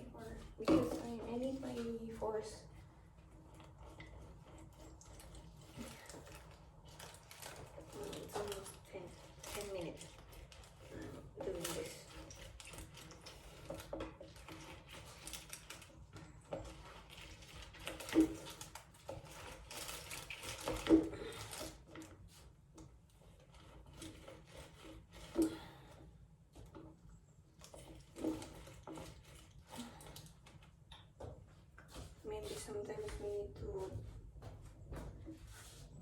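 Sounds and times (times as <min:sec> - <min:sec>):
lemon rubbing on manual juicer: 0:00.0 - 0:36.0.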